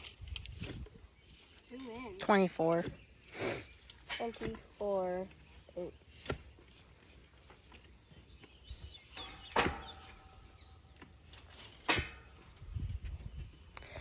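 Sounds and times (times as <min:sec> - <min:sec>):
sharp knocks: 0:09.2 - 0:10.1.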